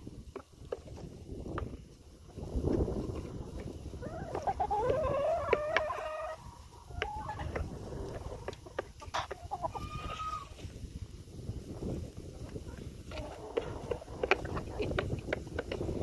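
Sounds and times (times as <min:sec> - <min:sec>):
chickens clucking: 0:00.2 - 0:11.2, 0:11.9 - 0:16.0
chicken long rising call: 0:04.0 - 0:08.5, 0:09.2 - 0:10.6.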